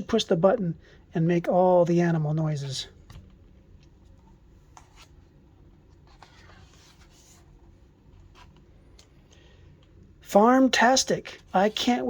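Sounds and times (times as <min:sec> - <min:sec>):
book pages rustling: 0:03.0 - 0:09.4.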